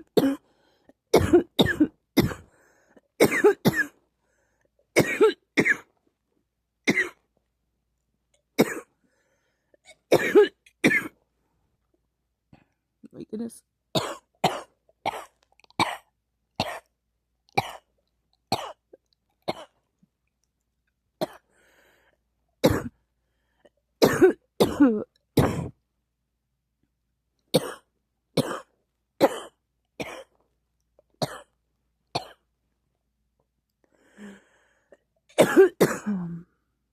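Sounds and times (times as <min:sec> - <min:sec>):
person coughing: 0:00.0 - 0:00.5, 0:01.1 - 0:02.5, 0:03.1 - 0:04.0, 0:05.0 - 0:05.9, 0:08.6 - 0:08.9, 0:10.0 - 0:11.2, 0:22.6 - 0:23.0, 0:24.0 - 0:25.8, 0:35.3 - 0:36.5.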